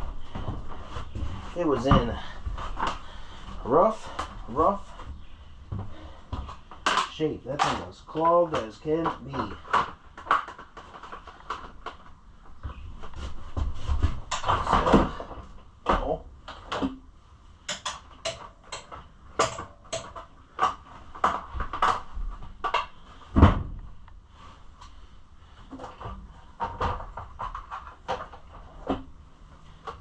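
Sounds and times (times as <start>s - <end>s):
tools clicking and knocking: 17.7s - 23.0s.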